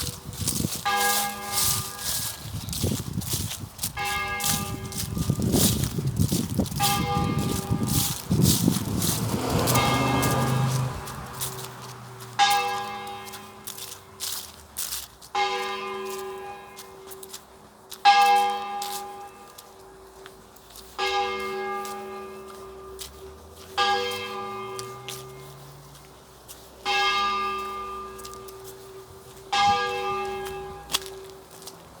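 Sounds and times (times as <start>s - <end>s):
church bell tolling: 0.0s - 2.9s, 4.0s - 5.8s, 6.8s - 8.1s, 9.3s - 13.9s, 15.3s - 17.0s, 18.0s - 19.6s, 21.0s - 22.9s, 23.8s - 25.5s, 26.8s - 28.9s, 29.5s - 31.3s.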